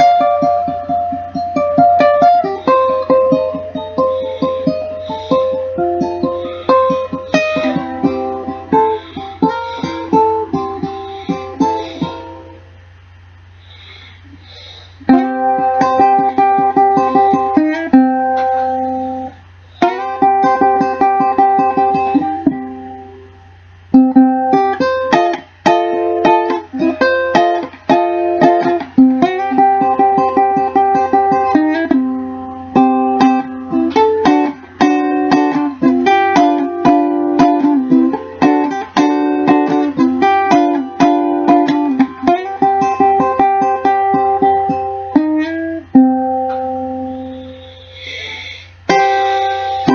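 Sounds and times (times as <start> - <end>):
ukulele playing: 0.0 - 13.2, 14.4 - 49.9.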